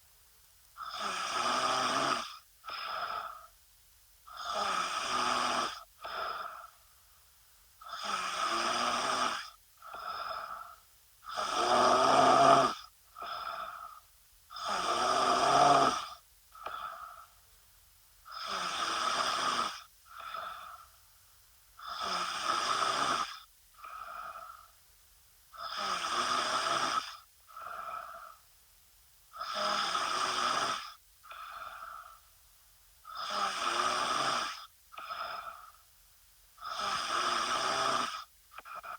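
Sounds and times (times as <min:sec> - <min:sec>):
woman snoring: 0:00.8 - 0:03.5, 0:04.3 - 0:06.8, 0:07.8 - 0:17.3, 0:18.3 - 0:20.9, 0:21.8 - 0:24.7, 0:25.6 - 0:28.4, 0:29.4 - 0:32.2, 0:33.0 - 0:35.8, 0:36.6 - 0:38.9.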